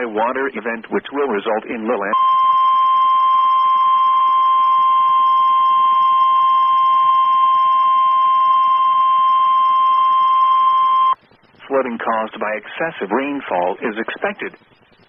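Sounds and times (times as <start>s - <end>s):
steady warning alarm beep: 2.1s - 11.2s.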